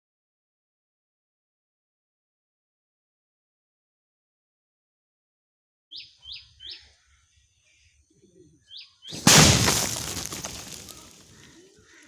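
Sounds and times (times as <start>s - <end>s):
bird chirps: 5.9s - 9.2s
firework loud blast: 9.2s - 10.4s.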